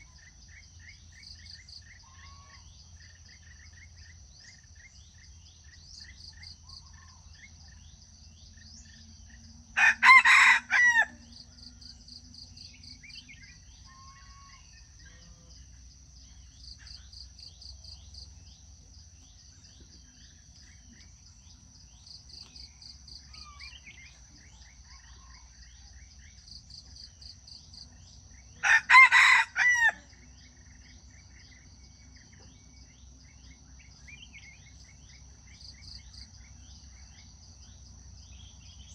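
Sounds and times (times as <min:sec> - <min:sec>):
insects chirping: 0:00.0 - 0:38.9
rooster crowing: 0:09.8 - 0:11.4, 0:28.6 - 0:30.2.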